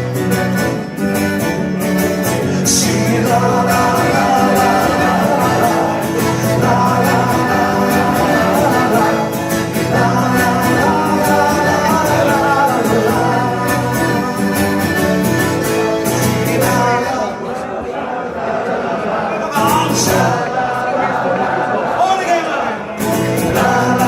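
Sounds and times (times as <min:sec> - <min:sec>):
live band playing: 0:00.0 - 0:17.3, 0:23.0 - 0:24.0
guitar: 0:00.0 - 0:24.0
person singing: 0:02.3 - 0:18.2, 0:23.0 - 0:24.0.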